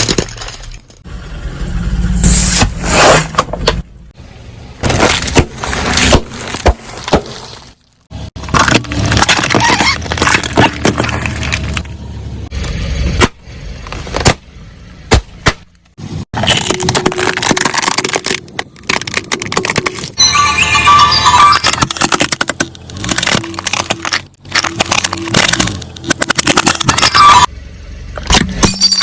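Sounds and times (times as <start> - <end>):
tyres crushing bottles and cans: 0.0 - 1.0, 4.8 - 11.9, 16.3 - 20.2, 21.5 - 27.5
car running low: 27.5 - 28.6.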